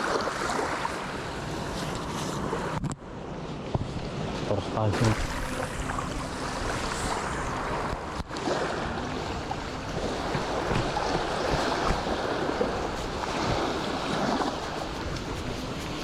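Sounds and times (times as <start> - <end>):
waves washing on shore: 0.0 - 16.0
wind on microphone: 0.0 - 16.0.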